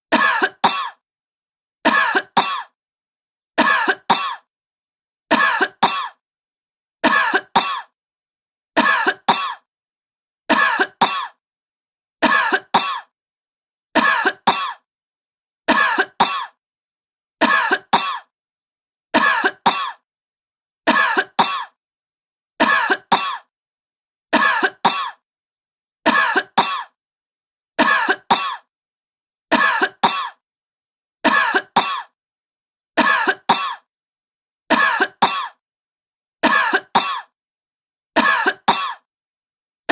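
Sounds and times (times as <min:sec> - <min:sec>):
woman coughing: 0:00.1 - 0:01.0, 0:01.9 - 0:02.8, 0:03.6 - 0:04.5, 0:05.3 - 0:06.2, 0:07.1 - 0:08.0, 0:08.8 - 0:09.7, 0:10.5 - 0:11.4, 0:12.2 - 0:13.1, 0:14.0 - 0:14.9, 0:15.7 - 0:16.6, 0:17.4 - 0:18.3, 0:19.2 - 0:20.0, 0:20.9 - 0:21.8, 0:22.6 - 0:23.5, 0:24.4 - 0:25.2, 0:26.1 - 0:27.0, 0:27.8 - 0:28.7, 0:29.6 - 0:30.4, 0:31.3 - 0:32.2, 0:33.0 - 0:33.9, 0:34.7 - 0:35.6, 0:36.4 - 0:37.4, 0:38.2 - 0:39.1.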